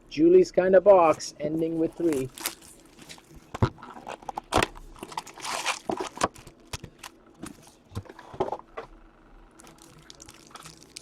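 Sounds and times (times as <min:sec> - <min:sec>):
plastic wrapping crinkling and tearing: 0:01.9 - 0:07.8, 0:09.6 - 0:11.0.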